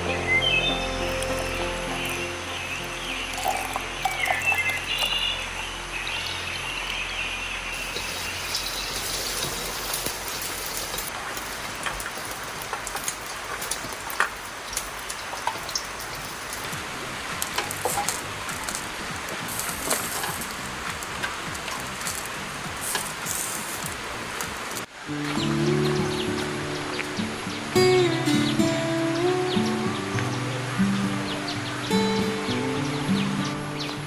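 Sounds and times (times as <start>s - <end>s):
background music: 0.0s - 7.2s
bird chirping: 16.6s - 24.9s
sharp drip-like ticks: 16.6s - 24.9s
water hissing: 16.6s - 24.9s.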